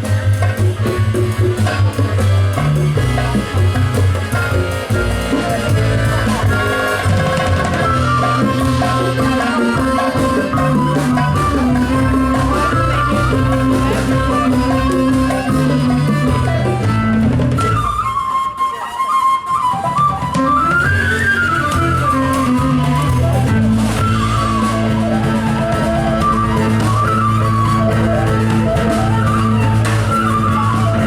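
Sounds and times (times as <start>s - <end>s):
bass and drums: 0.0s - 18.5s, 19.8s - 31.0s
ornamented melody line: 0.0s - 31.0s.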